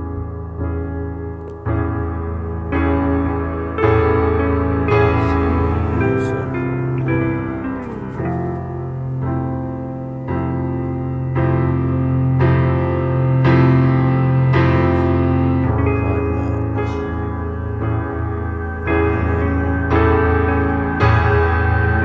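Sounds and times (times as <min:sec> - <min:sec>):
slow piano chords: 0:00.0 - 0:22.0
held low bass note: 0:03.9 - 0:10.2, 0:13.4 - 0:22.0.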